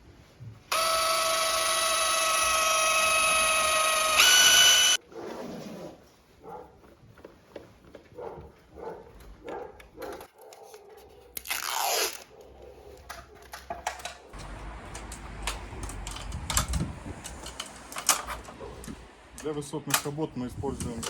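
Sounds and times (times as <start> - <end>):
handling clicks and crunching: 8.0 - 20.2.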